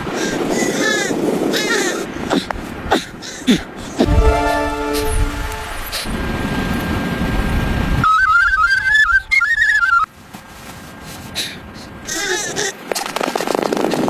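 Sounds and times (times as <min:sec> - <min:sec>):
high piping melody: 0:04.0 - 0:06.4
low rumbling noise: 0:04.0 - 0:08.0.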